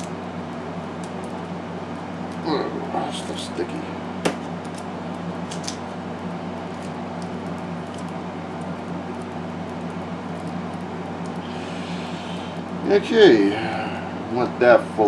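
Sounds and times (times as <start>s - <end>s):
low hum of room machinery: 0.0s - 15.0s.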